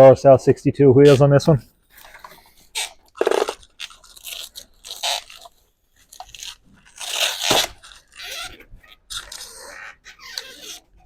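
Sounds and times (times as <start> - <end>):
crinkling packaging wrap: 2.0 - 9.7.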